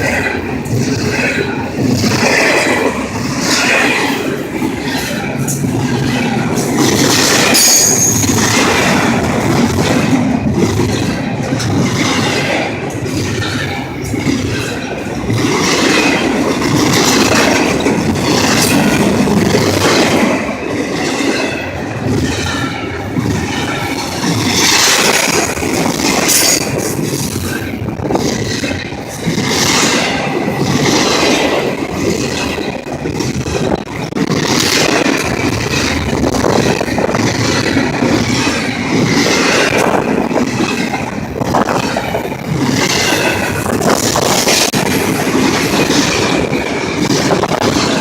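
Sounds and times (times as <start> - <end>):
train wheels rumbling on track: 0.0 - 48.0
high wheel squeal: 7.4 - 8.6.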